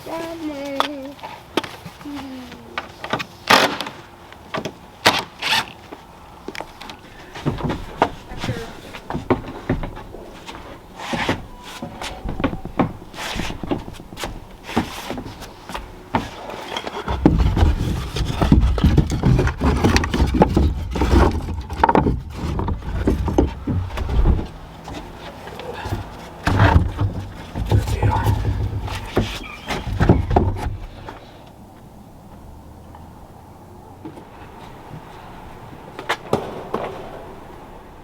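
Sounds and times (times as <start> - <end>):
firewood knocking together: 7.4 - 31.1.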